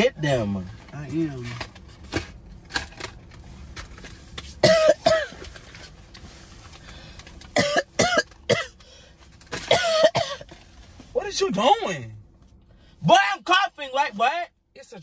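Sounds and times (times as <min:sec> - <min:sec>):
woman coughing: 0:04.6 - 0:05.4, 0:07.6 - 0:08.8, 0:09.6 - 0:10.5.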